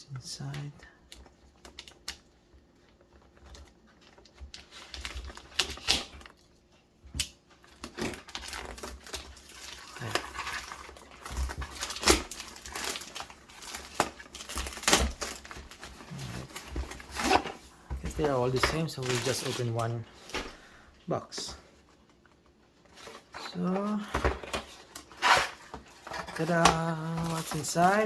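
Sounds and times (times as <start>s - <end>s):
cardboard packaging crinkling: 0.3s - 28.0s.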